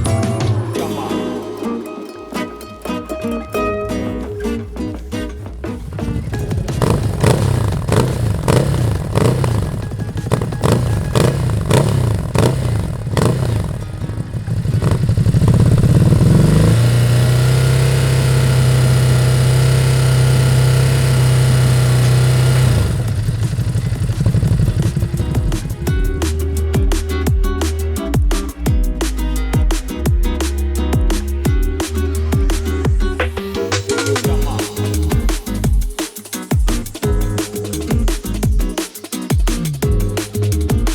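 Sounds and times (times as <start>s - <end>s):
motorcycle engine revving: 5.8s - 27.1s.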